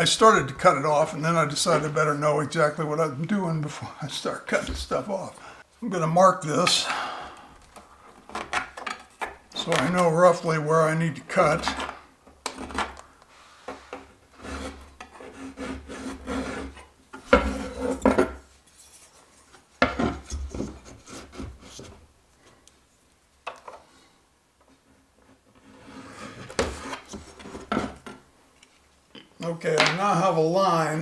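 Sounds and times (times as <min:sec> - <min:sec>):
pencil scratching on wood: 0:14.4 - 0:16.9.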